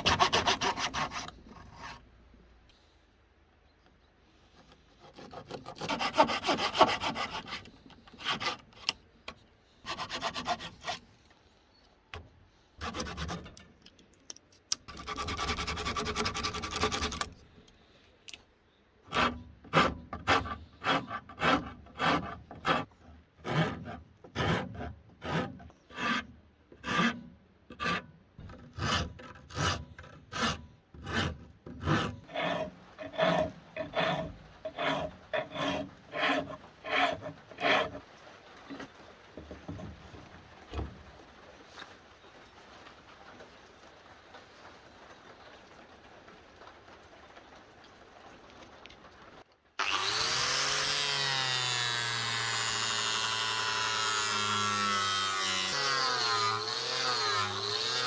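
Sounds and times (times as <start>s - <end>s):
hand rasp scraping wood: 0.0s - 2.0s, 4.6s - 9.0s, 9.8s - 11.1s, 12.8s - 13.6s, 14.9s - 17.4s, 19.1s - 38.0s, 49.8s - 58.0s.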